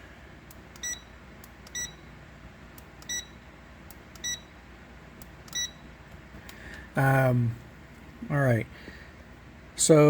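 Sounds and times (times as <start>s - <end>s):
multimeter high beeps: 0.8s - 2.1s, 3.0s - 3.5s, 4.2s - 4.6s, 5.5s - 5.8s.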